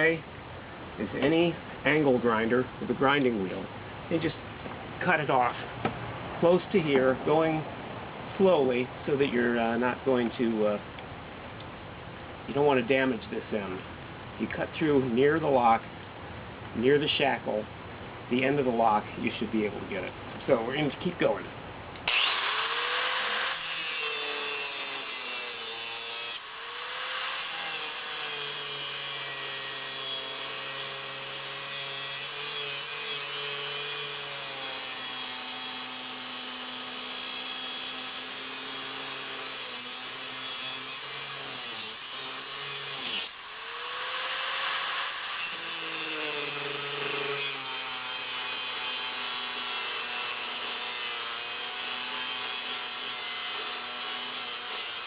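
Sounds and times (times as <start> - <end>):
angle grinder cutting steel: 22.1 - 55.0.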